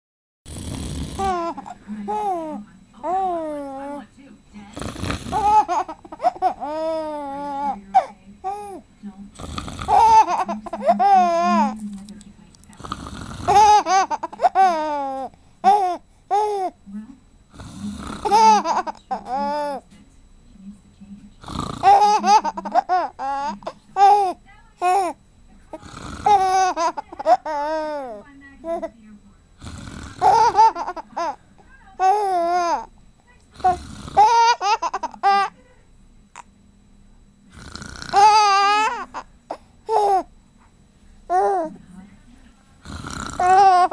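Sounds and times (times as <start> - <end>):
person fake snoring: 0.5 - 2.4, 4.7 - 7.8, 9.3 - 11.7, 12.8 - 16.5, 17.5 - 19.8, 21.4 - 24.3, 25.7 - 28.2, 29.6 - 31.4, 33.5 - 35.2, 37.5 - 39.2, 42.8 - 43.9
baby laughing: 5.3 - 7.6, 9.9 - 11.7, 13.5 - 16.6, 18.3 - 19.8, 21.8 - 24.3, 30.2 - 31.4, 34.2 - 35.5.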